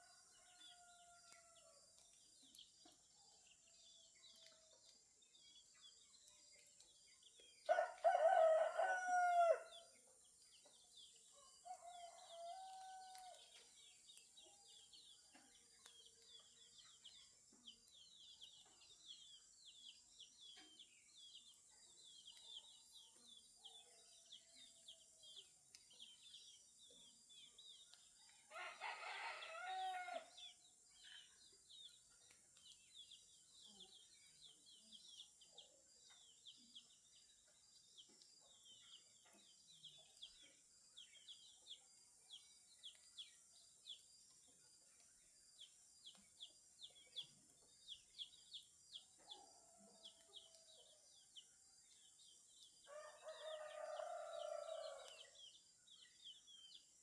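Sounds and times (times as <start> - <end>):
small birds chirping: 0.0 - 57.0
rooster crowing: 7.7 - 9.7, 28.5 - 30.3, 52.9 - 55.1.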